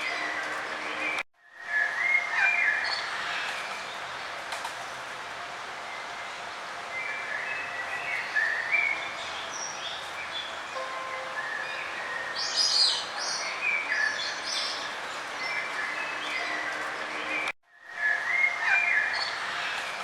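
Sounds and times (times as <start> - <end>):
songbirds whistling: 11.2 - 19.5.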